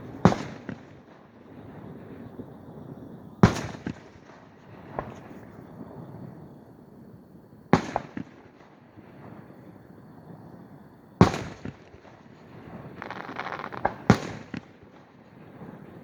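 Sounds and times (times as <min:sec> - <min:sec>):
fireworks booming: 0:11.2 - 0:15.0
fireworks crackling: 0:11.4 - 0:15.0.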